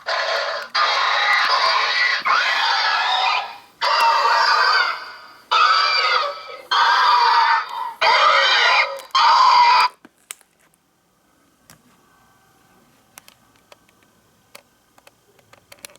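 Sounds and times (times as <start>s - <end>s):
recorded creature screeches: 0.0s - 10.0s.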